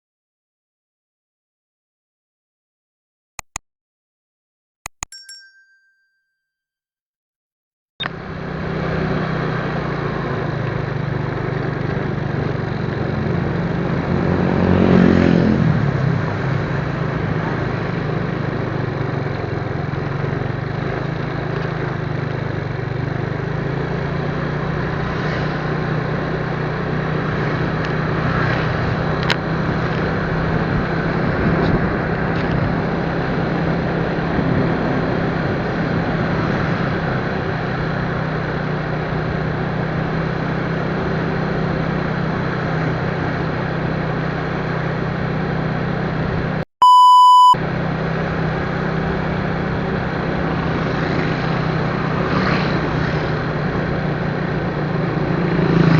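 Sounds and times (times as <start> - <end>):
motorcycle engine running: 8.1 - 46.6, 47.8 - 55.9
road noise rushing: 8.2 - 19.6, 22.8 - 46.6, 47.4 - 55.9.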